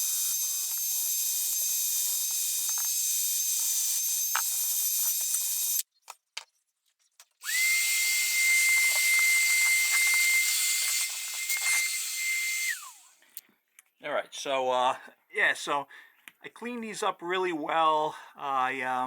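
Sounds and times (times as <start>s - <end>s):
power tool grinding metal: 0.0s - 5.8s, 7.4s - 13.2s.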